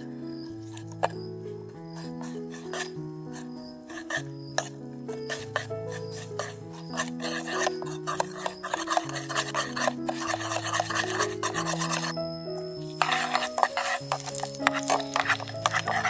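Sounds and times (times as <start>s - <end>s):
background music with low notes: 0.0s - 16.0s
chewing and crunching: 13.0s - 16.0s.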